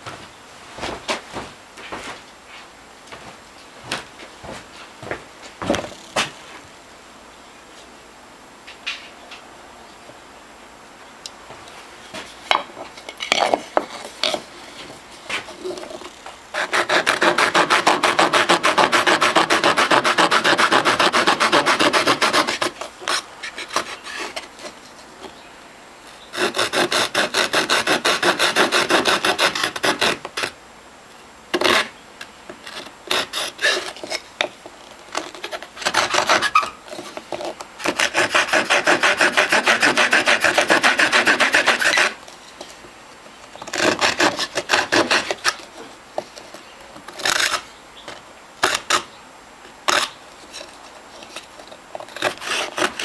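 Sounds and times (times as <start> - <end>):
saw blade sawing: 5.7 - 6.8, 15.3 - 24.8, 26.3 - 30.5, 32.7 - 34.2, 35.1 - 42.2, 43.6 - 45.7, 52.0 - 53.0.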